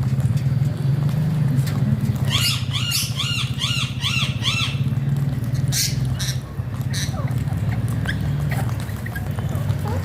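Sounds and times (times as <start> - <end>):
parakeet screeching calls: 2.3 - 4.8.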